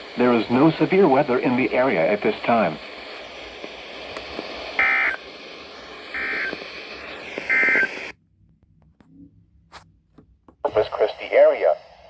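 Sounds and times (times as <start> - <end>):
steady radio hiss: 0.0 - 8.2, 10.6 - 12.0.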